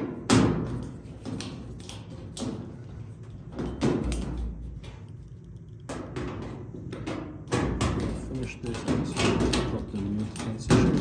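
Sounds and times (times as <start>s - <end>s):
metal panel knocking: 6.0s - 11.0s.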